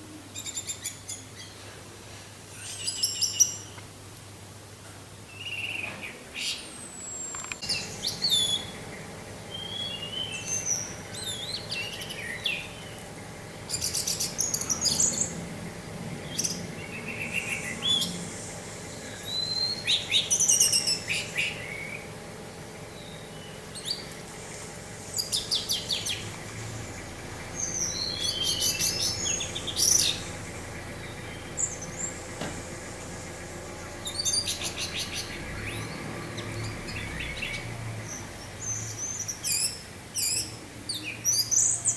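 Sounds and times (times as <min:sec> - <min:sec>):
thrush singing: 0:07.6 - 0:39.5.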